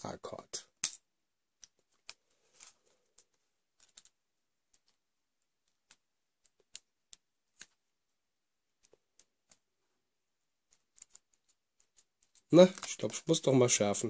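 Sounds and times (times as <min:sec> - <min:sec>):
faint clicks and taps: 0:08.8 - 0:09.7, 0:10.6 - 0:13.4.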